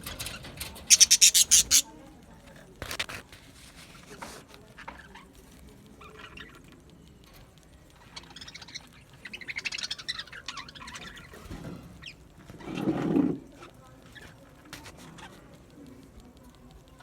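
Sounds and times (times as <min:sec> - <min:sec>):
budgerigars chirping and warbling: 0:00.9 - 0:01.9, 0:08.0 - 0:12.3.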